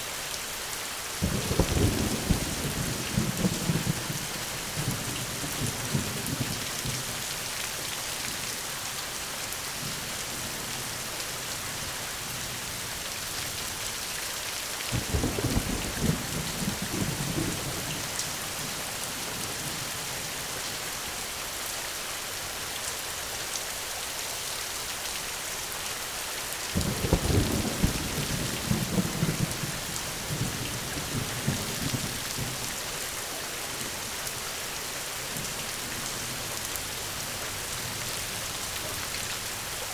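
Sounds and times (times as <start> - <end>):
steady rain: 0.0 - 39.9
thunder rumbling: 1.2 - 6.6, 26.8 - 32.7.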